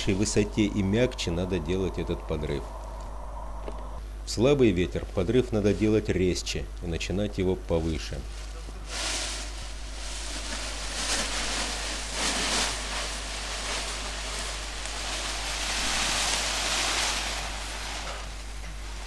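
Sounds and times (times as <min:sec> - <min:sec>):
wind rushing over microphone: 0:00.0 - 0:04.0.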